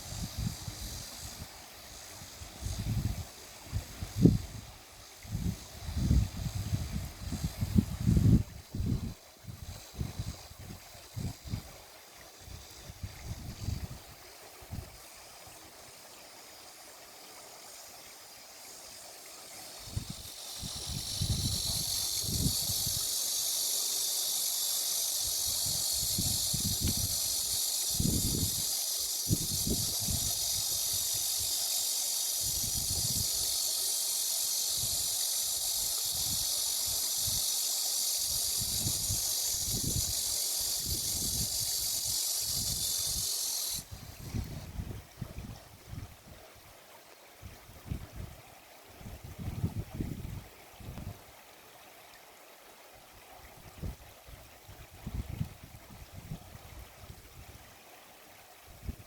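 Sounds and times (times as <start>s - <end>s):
steady high-pitched hiss: 0.0s - 59.0s
wind buffeting microphone: 2.4s - 11.8s, 19.8s - 23.4s, 25.2s - 31.5s, 32.4s - 33.7s, 38.2s - 46.2s, 49.0s - 51.2s.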